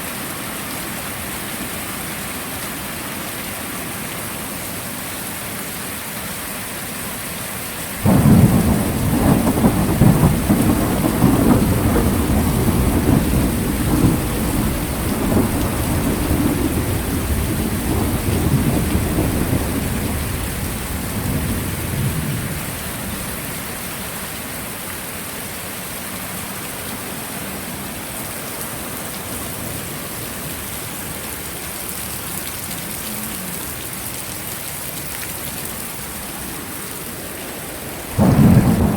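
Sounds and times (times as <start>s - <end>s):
heavy rain: 0.0s - 38.9s
thunder crack and rumble: 8.0s - 23.2s, 38.2s - 38.9s.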